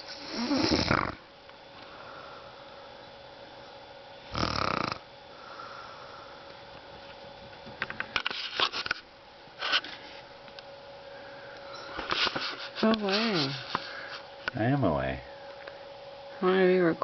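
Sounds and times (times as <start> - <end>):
woman snoring: 0.0 - 1.2, 4.3 - 6.0.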